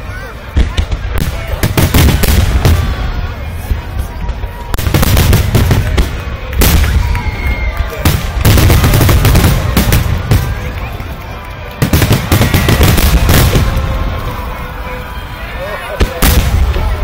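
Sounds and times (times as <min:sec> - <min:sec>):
fireworks crackling: 0:00.4 - 0:17.0
firework shells booming: 0:00.6 - 0:03.2, 0:08.0 - 0:10.8, 0:11.8 - 0:14.1.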